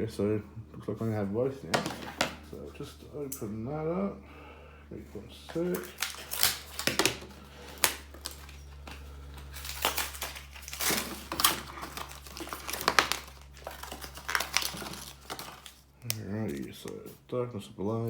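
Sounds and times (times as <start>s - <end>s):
card pack packaging crinkling: 5.5s - 17.2s.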